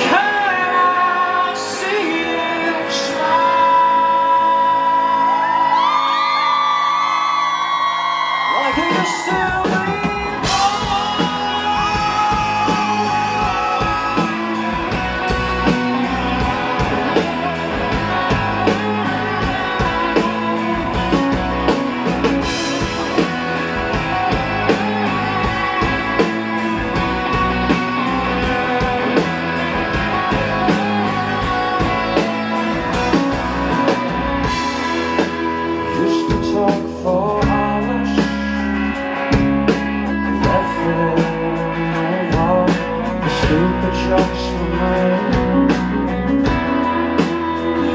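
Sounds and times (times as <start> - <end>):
bass: 0.0 - 47.9
electric guitar: 0.0 - 47.9
person singing: 0.0 - 47.9
drum beat: 8.8 - 35.6.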